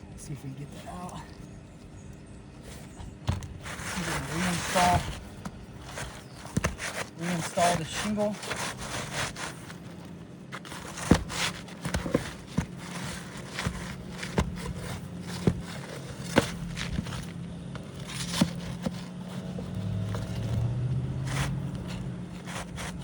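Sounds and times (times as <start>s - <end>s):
roof shingle taps and scrapes: 2.6s - 23.0s.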